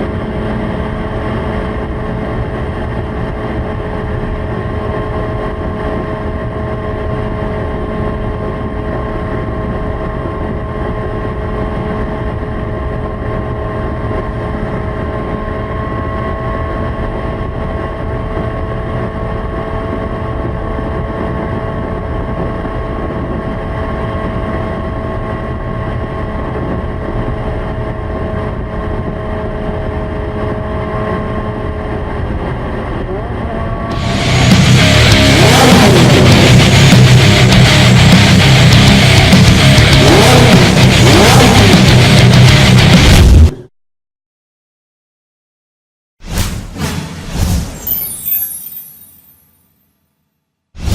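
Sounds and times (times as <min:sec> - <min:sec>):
motorcycle engine at high revs: 0:33.9 - 0:42.5.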